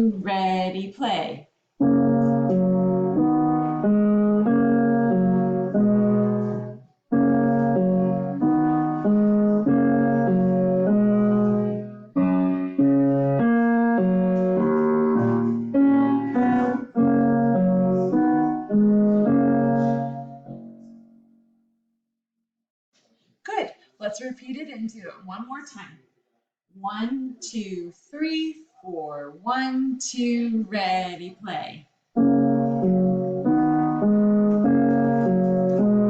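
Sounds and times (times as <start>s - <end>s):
piano duet accompaniment: 1.8s - 21.3s, 32.2s - 36.0s.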